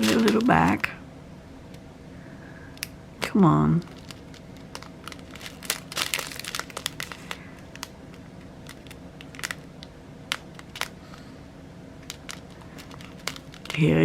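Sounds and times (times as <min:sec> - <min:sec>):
plastic packaging crinkling: 0:00.0 - 0:00.9, 0:03.2 - 0:11.0, 0:12.0 - 0:14.0.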